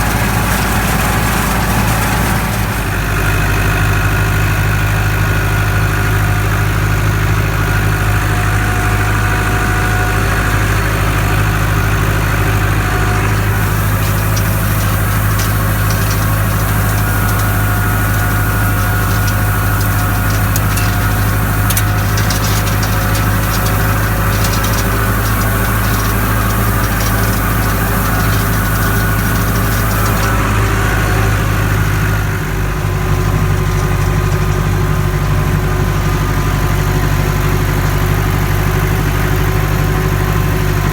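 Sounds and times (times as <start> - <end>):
tractor engine running: 0.0 - 40.9
light clicking and rattling: 12.9 - 30.5.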